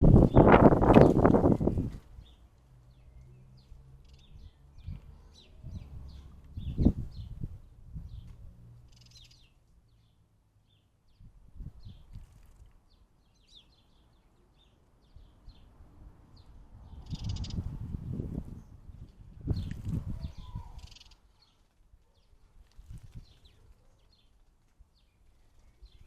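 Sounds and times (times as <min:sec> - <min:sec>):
small birds chirping: 0:00.0 - 0:26.0
wings fluttering: 0:11.9 - 0:12.8, 0:19.0 - 0:26.0.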